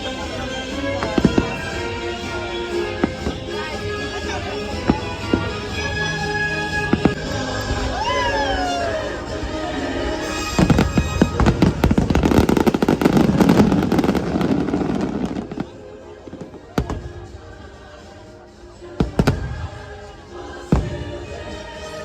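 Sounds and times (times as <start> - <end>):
fireworks bangs and crackles: 0.0 - 7.8, 10.4 - 18.1, 18.9 - 21.9
music: 0.0 - 22.0
fireworks booms: 19.0 - 19.8.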